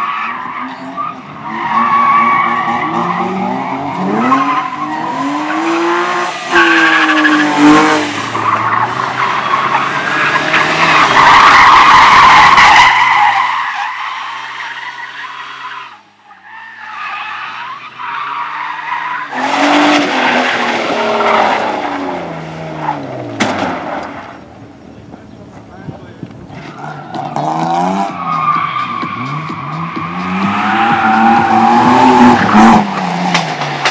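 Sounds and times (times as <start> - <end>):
race car engine revving: 0.6 - 12.6, 19.2 - 25.7, 26.4 - 33.9.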